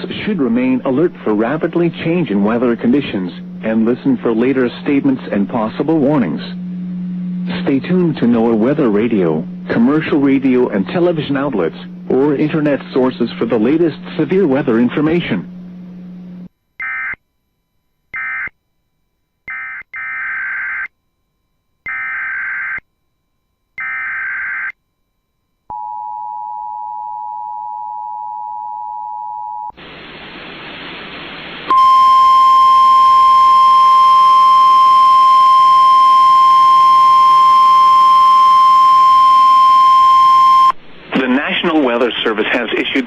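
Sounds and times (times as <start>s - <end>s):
radio static: 0.0s - 6.8s, 7.4s - 15.5s, 41.0s - 43.0s
steady single-tone warning alarm: 16.8s - 17.2s, 18.0s - 28.1s, 31.7s - 40.8s
two-tone attention signal: 31.7s - 40.8s.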